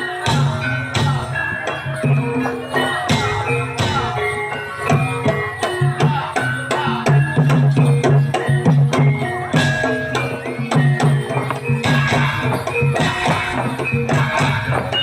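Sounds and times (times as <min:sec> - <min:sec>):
hand drums: 0:00.0 - 0:15.0
ringing pitched percussion notes: 0:00.0 - 0:15.0.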